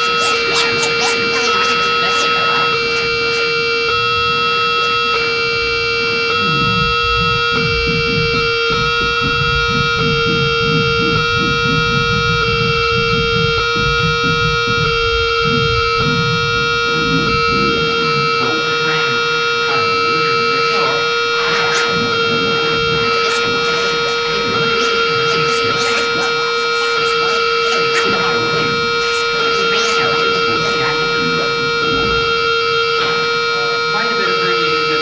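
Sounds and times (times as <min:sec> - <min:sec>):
scratchy clicks: 0:00.0 - 0:03.6, 0:20.3 - 0:31.5
pulsing electronic drone: 0:00.0 - 0:35.0.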